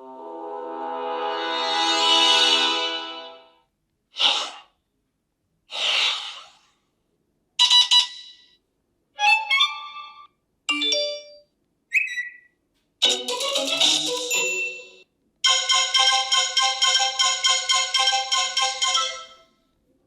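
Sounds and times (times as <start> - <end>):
long sustained tone: 0.0 - 3.0
quick rising run of notes: 0.0 - 3.4.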